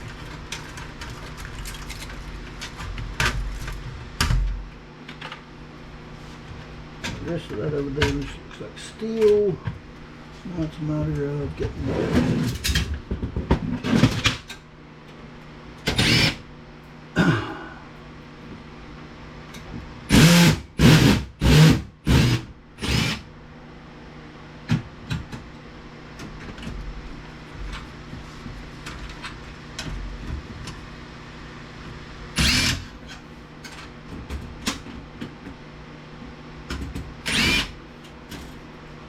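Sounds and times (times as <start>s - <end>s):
power drill spinning: 16.0s - 16.4s, 20.1s - 23.2s, 32.4s - 32.9s, 37.2s - 37.8s.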